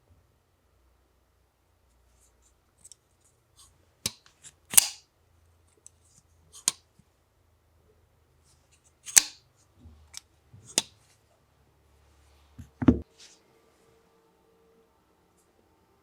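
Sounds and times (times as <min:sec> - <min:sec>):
knife blade metallic snaps: 0:04.1 - 0:05.0, 0:09.1 - 0:09.4.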